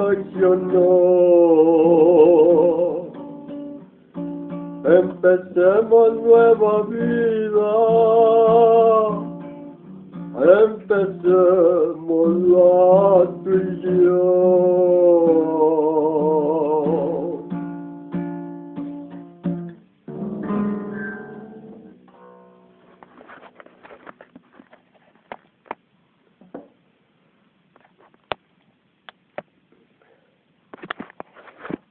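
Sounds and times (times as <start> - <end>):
acoustic guitar strummed chords: 0.0 - 24.2.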